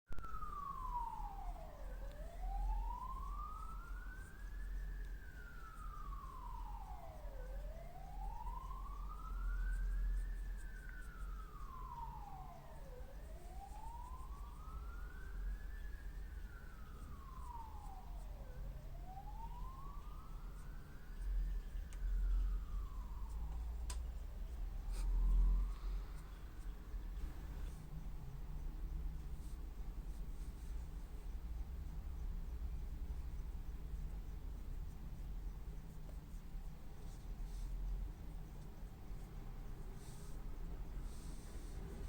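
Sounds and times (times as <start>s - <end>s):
siren wailing: 0.1s - 27.8s.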